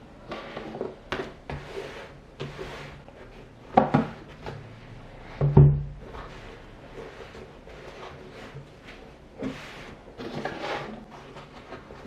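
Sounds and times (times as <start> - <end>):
cardboard sliding and rustling: 6.1 - 12.0.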